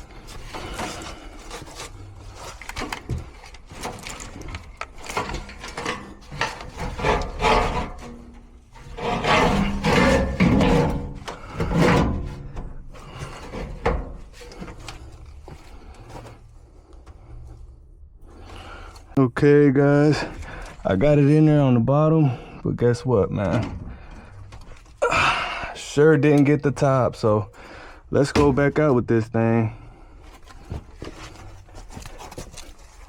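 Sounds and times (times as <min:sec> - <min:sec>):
metal scraping and rubbing: 0:00.0 - 0:16.4.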